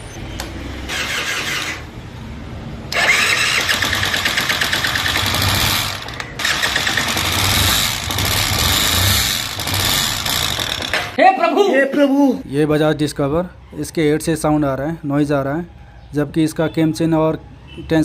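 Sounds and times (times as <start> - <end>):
motorcycle engine clattering: 3.0 - 11.2.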